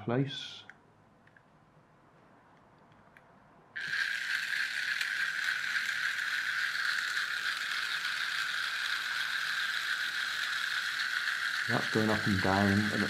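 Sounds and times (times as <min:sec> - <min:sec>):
toy motor and gears whirring: 0:03.8 - 0:13.0.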